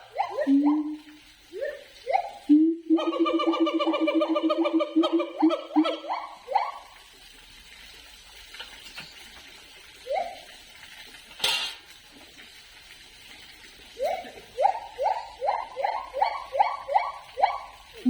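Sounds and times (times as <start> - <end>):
gibbon whooping: 0.0 - 1.0, 1.6 - 6.8, 10.0 - 10.5, 14.0 - 17.8.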